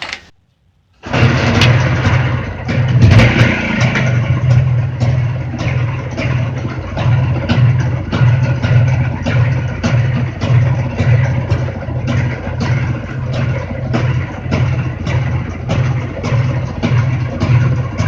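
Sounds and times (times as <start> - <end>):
two-stroke motorcycle engine running: 0.0 - 0.3.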